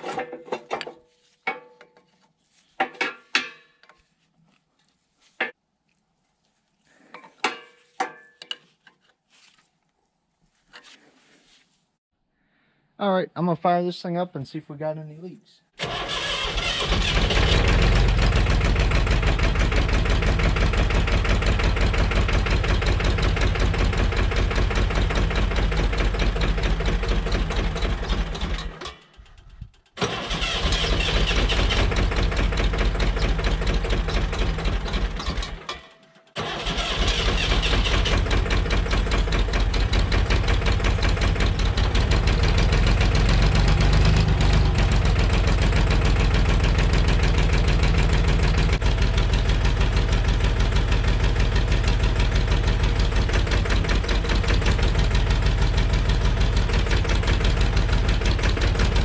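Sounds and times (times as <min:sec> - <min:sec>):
starter motor whine and cranking: 0:15.8 - 0:18.2, 0:28.2 - 0:32.1, 0:36.4 - 0:42.4
engine idling: 0:15.8 - 0:35.7, 0:36.4 - 0:59.0.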